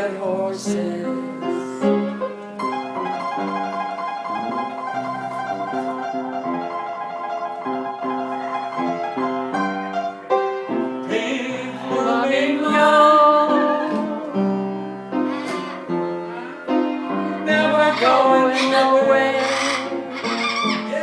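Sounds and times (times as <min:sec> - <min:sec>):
piano playing: 0:00.0 - 0:21.0.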